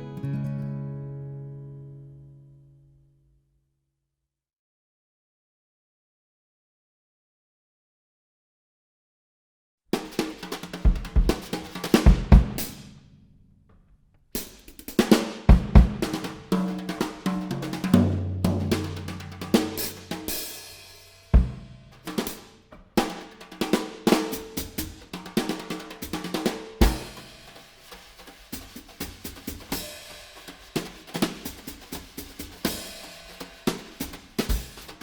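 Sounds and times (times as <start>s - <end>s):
drum kit music: 10.0s - 13.0s, 14.4s - 35.0s
heavy kick drum strokes: 10.0s - 13.0s, 14.6s - 35.0s.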